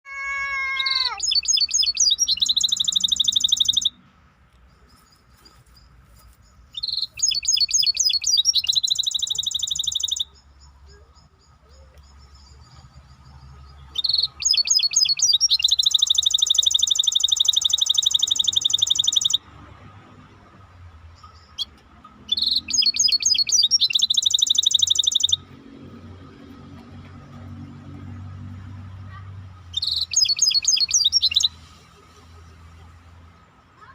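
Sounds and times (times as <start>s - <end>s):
songbird trilling: 0.2s - 3.9s, 6.7s - 19.4s, 21.2s - 25.4s, 29.7s - 31.6s.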